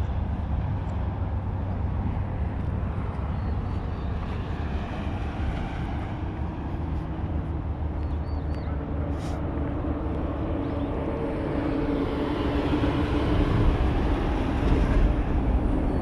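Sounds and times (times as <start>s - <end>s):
droning engine rumble: 0.0s - 16.0s.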